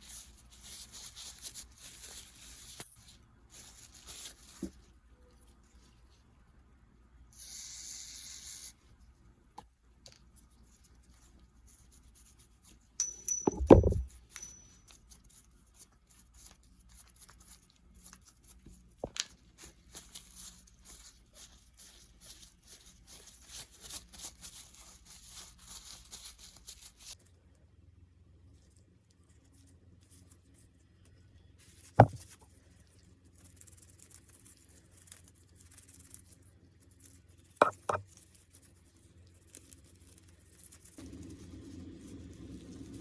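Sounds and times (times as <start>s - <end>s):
loud knock with clatter: 13.4s - 14.1s, 32.0s - 32.2s.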